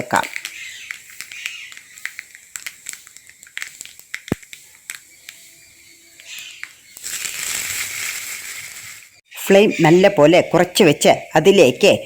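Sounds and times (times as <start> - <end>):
leaves sizzling in oil: 0.0 - 9.2
seeds popping in hot oil: 0.0 - 9.2.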